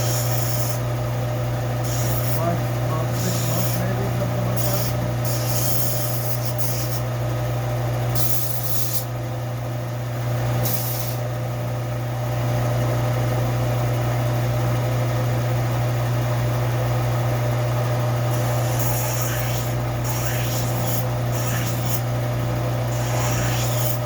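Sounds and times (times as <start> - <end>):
low machine hum: 0.0 - 24.0
sandpaper scraping metal: 1.9 - 2.5, 3.1 - 7.0, 18.4 - 22.0, 22.9 - 24.0.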